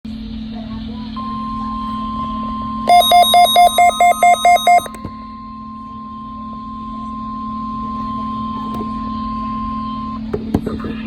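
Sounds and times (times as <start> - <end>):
steady low hum: 0.1 - 11.0
faint high steady tone: 0.6 - 10.3
rapid electronic beeping: 1.2 - 5.0.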